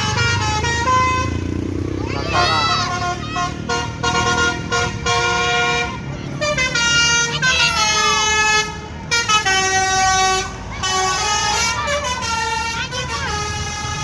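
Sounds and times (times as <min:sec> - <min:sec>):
bus multi-tone horn melody: 0:00.0 - 0:14.0.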